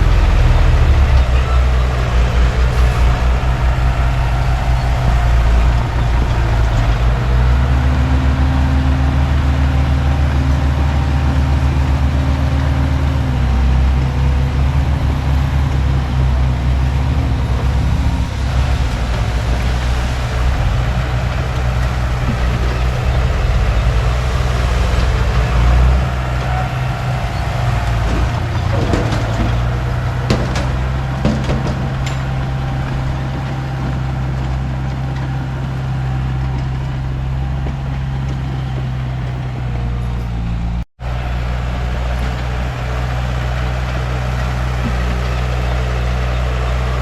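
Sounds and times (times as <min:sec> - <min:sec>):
high-pitched engine whine: 0:00.0 - 0:34.8
bulldozer diesel engine running: 0:00.0 - 0:47.0.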